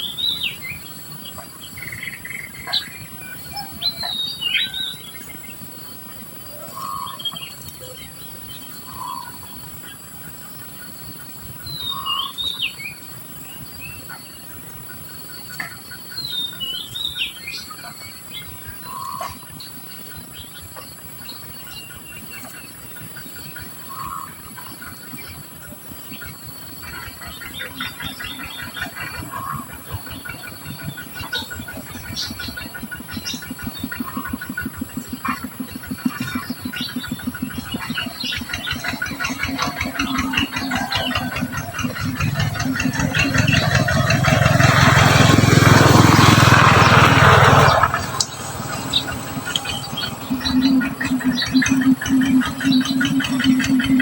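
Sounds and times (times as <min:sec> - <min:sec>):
finches chirping: 0:47.7 - 0:54.0.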